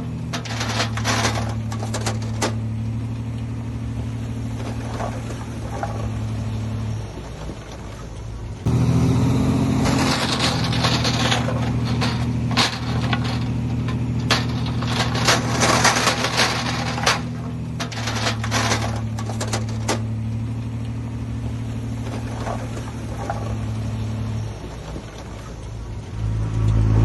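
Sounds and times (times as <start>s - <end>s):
sharp metal clanks and knocks: 0.0s - 2.7s, 9.7s - 20.2s
diesel engine running: 0.0s - 27.0s.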